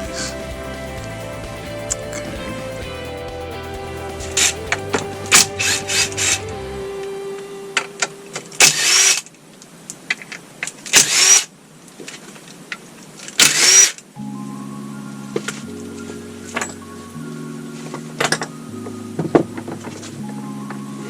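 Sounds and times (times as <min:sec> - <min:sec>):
background music: 0:00.0 - 0:08.5, 0:14.2 - 0:21.0.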